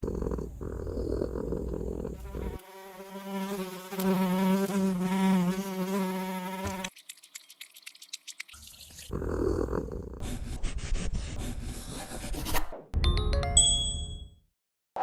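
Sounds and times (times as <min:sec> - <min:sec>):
insect-like buzzing: 0:02.2 - 0:09.1.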